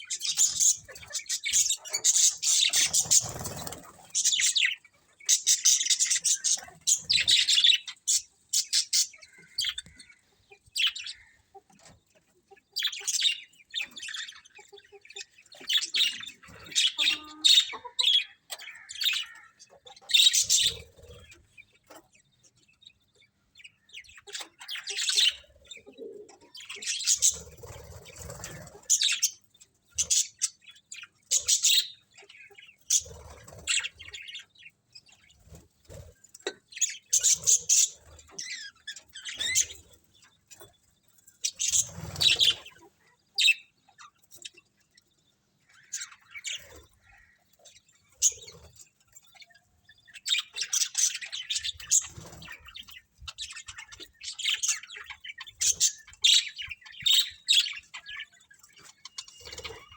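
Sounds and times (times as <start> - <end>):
budgerigars chirping: 0.0 - 59.9.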